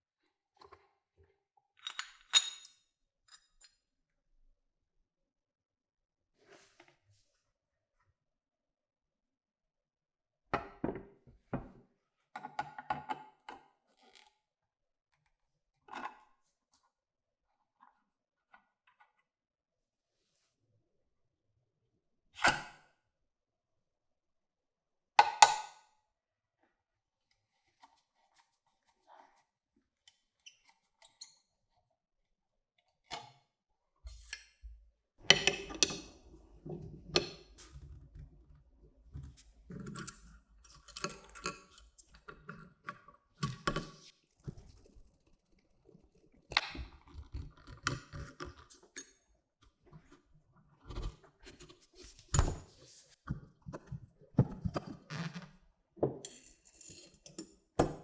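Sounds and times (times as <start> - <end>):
small parts and tools clinking: 56.2 - 57.5.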